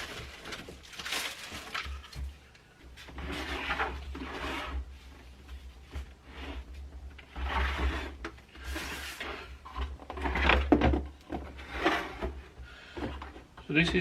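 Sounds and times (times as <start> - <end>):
plastic casing sliding and rubbing: 3.0 - 14.0.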